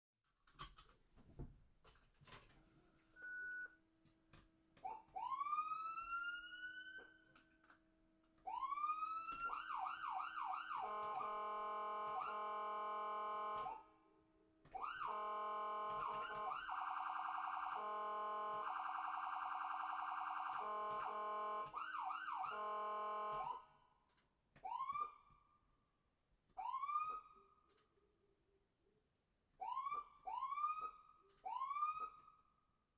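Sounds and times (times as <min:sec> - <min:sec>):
ambulance siren: 0:04.8 - 0:07.5, 0:08.4 - 0:14.0, 0:14.7 - 0:23.9, 0:24.6 - 0:25.5, 0:26.6 - 0:27.6, 0:29.6 - 0:32.5.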